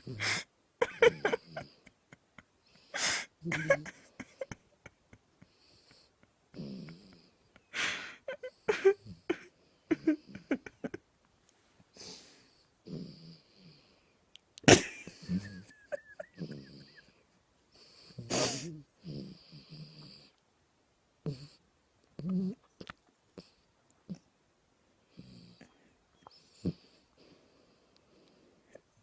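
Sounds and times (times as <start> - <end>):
small dog snoring: 5.4 - 7.4, 12.4 - 14.0, 16.3 - 17.2, 17.8 - 20.4, 21.2 - 21.6, 22.2 - 22.7, 25.1 - 27.4.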